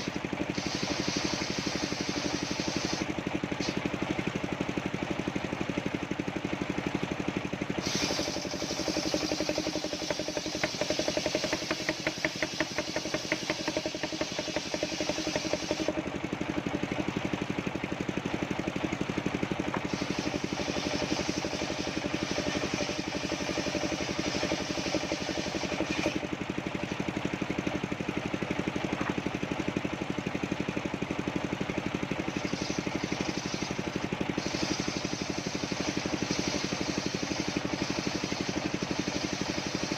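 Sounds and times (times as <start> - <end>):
saw blade cutting wood: 0.0 - 3.9, 7.8 - 16.0, 19.7 - 26.3, 32.2 - 39.9
sawmill engine running: 0.0 - 39.9.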